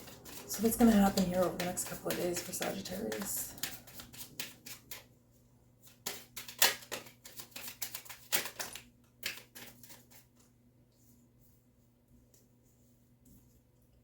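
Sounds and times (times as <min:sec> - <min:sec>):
cards being shuffled: 0:00.0 - 0:05.1, 0:05.8 - 0:10.4.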